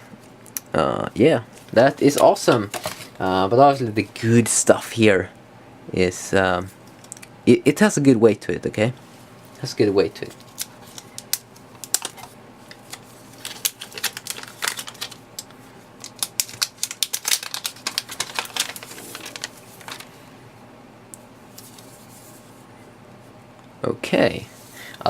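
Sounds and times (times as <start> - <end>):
phone packaging clicks and crackles: 10.4 - 20.1.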